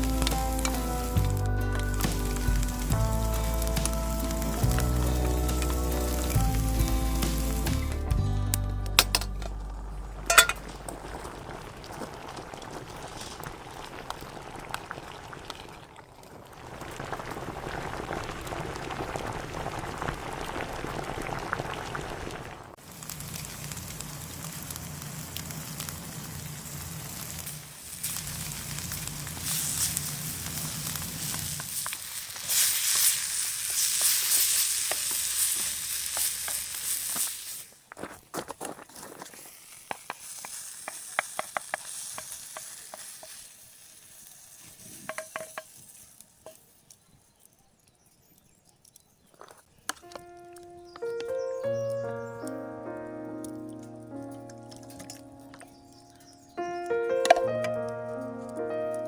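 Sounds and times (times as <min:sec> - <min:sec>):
food sizzling in a pan: 0:00.0 - 0:08.1, 0:16.8 - 0:37.9, 0:39.4 - 0:46.8.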